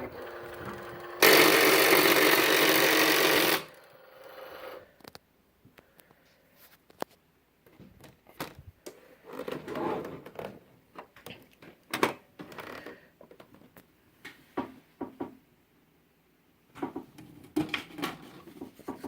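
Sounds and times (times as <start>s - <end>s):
cutting machine clicking: 0.0s - 4.8s
machine grinding: 0.0s - 4.8s.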